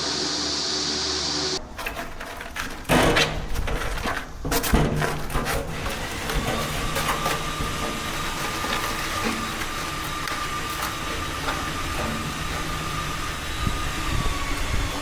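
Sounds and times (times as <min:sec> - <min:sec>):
small motor whining: 0:05.7 - 0:15.0.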